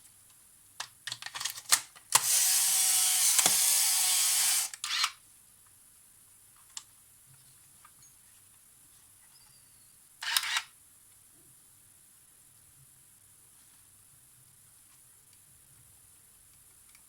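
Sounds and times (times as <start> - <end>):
camera shutter clicks: 1.7 - 5.2, 10.2 - 10.7
camera motor whirring: 2.2 - 5.1, 10.2 - 10.7.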